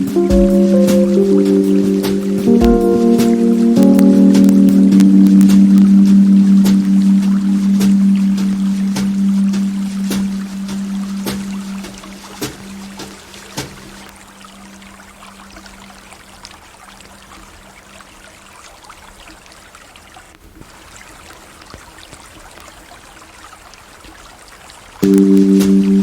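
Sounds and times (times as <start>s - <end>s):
ambient music: 0.0s - 13.2s, 25.0s - 26.0s
low held music tone: 0.0s - 16.4s, 25.0s - 26.0s
river water flowing: 0.0s - 26.0s.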